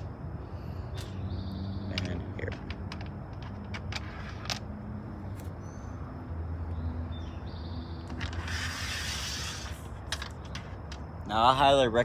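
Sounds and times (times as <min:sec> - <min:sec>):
bolts clicking and tapping: 0:01.8 - 0:04.7
hiss: 0:08.4 - 0:09.9.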